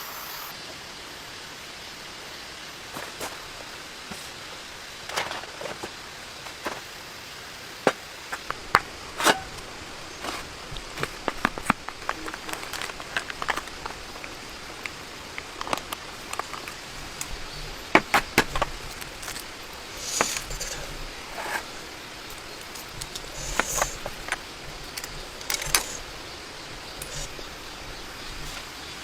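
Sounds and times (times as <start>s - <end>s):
steady rain hiss: 0.0s - 29.0s
rustling bursts: 3.1s - 29.0s
sharp clicks and knocks: 7.9s - 29.0s.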